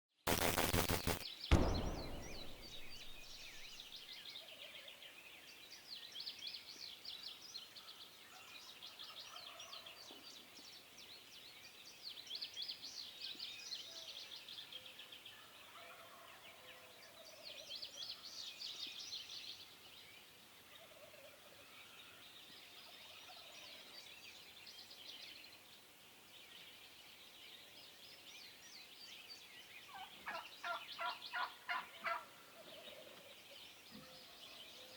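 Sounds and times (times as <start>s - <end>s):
loud bang: 0.3s - 3.8s.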